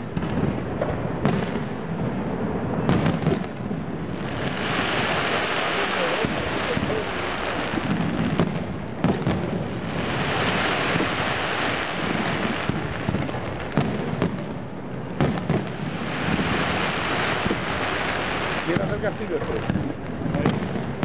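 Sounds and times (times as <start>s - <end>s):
fireworks bangs: 0.0s - 21.0s
steady hiss: 1.5s - 21.0s.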